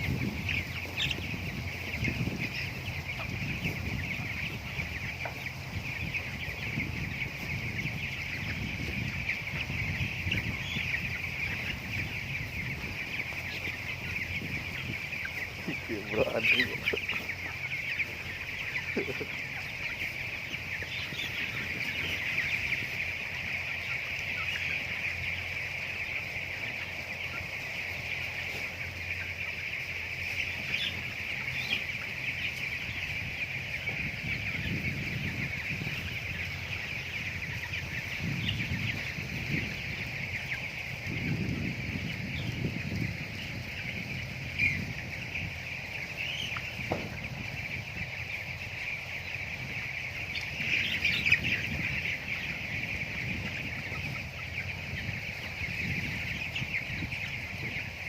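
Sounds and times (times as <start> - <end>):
chickens peeping and cheeping: 0.0 - 58.0
lower chicken noises: 0.0 - 58.0.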